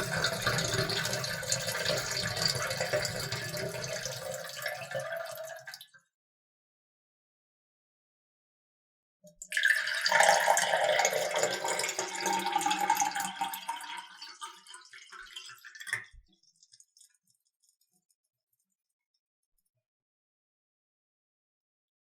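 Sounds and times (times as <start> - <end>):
water pouring into a cup: 0.0 - 5.9, 9.3 - 17.2.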